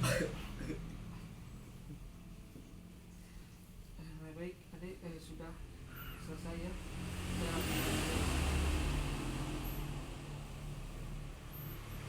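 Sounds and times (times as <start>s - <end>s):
road vehicle passing by: 5.2s - 12.0s.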